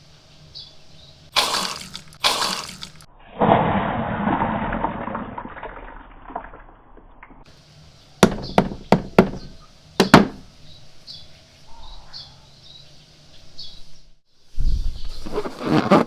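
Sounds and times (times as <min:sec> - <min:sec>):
sharp knocks: 0:08.2 - 0:10.4.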